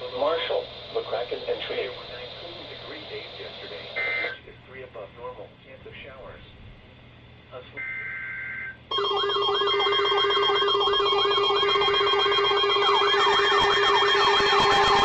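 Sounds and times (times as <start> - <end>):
electronic data burst: 8.9 - 15.0
warbling alert alarm: 8.9 - 15.0.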